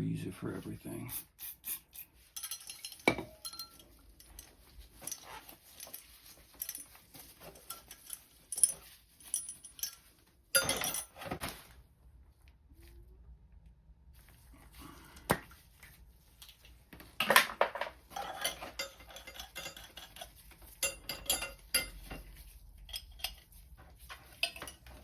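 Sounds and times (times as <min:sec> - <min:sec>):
metal tools clinking and tapping: 0:02.3 - 0:11.4, 0:17.2 - 0:25.0.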